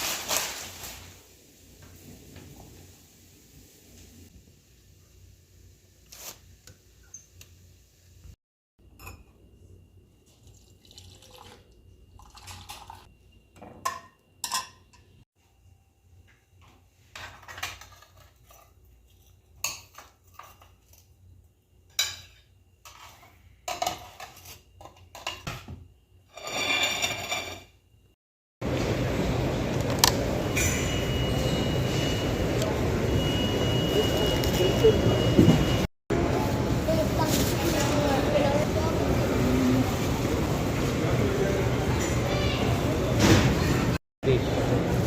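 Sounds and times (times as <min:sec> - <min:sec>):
dishes and containers clattering: 0:12.3 - 0:15.2, 0:17.1 - 0:21.2, 0:21.9 - 0:25.8.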